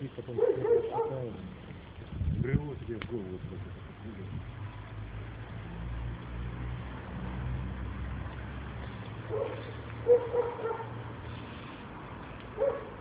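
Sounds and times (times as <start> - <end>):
dog yelping: 0.4 - 1.3, 9.3 - 11.0, 12.6 - 13.0
vehicle engine humming: 3.0 - 13.0.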